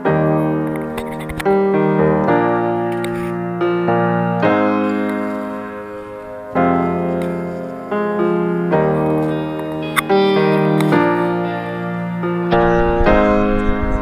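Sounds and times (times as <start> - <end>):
slow piano chords: 0.0 - 14.0.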